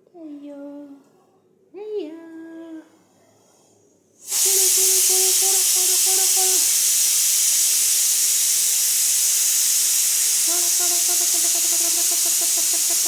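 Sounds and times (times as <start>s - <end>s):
loud steady hiss: 4.2s - 13.0s.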